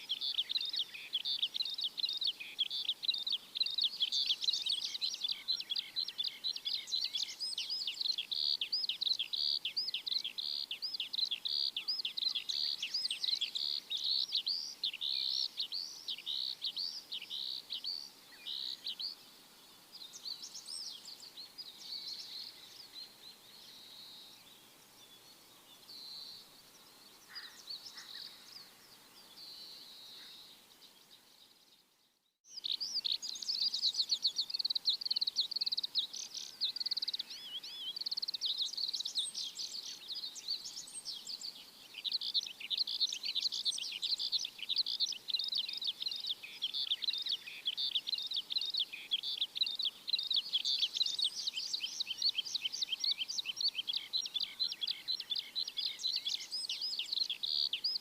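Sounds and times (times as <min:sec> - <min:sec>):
flock of small birds chirping: 0:00.0 - 0:58.0.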